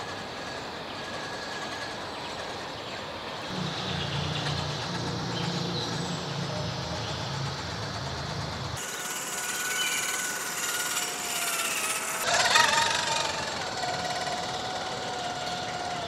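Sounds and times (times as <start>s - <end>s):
low drone: 3.4s - 11.2s
toy car electric motor running: 7.1s - 16.0s.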